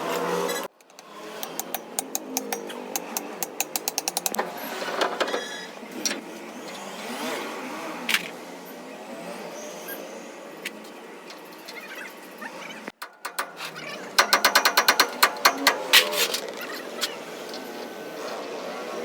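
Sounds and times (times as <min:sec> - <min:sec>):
tools knocking on wheel hub: 0:01.4 - 0:04.4, 0:12.9 - 0:16.4
sharp metallic clicks: 0:12.9 - 0:16.5.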